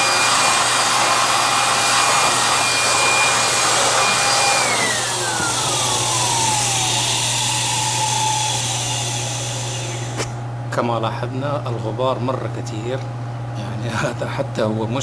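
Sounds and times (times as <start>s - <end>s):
electric air blower whining: 0.0s - 10.5s.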